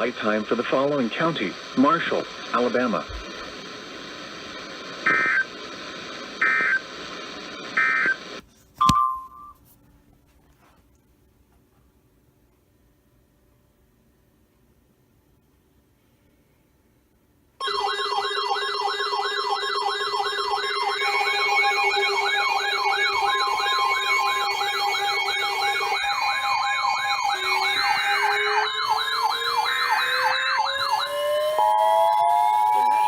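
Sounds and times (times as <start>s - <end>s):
electronic siren yelp: 17.6s - 33.0s
steady siren tones: 18.8s - 33.0s
rising siren wail: 21.0s - 33.0s.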